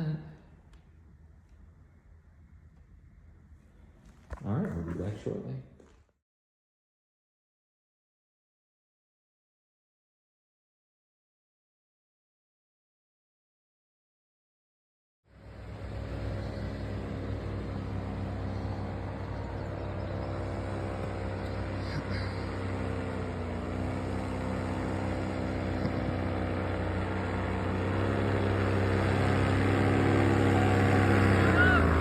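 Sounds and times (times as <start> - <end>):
paramotor engine running: 15.3 - 32.0.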